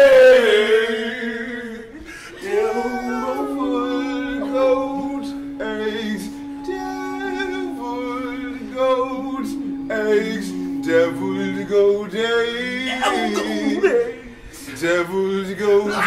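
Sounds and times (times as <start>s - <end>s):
voices singing a cappella: 0.0s - 16.0s
low held note: 3.0s - 14.0s.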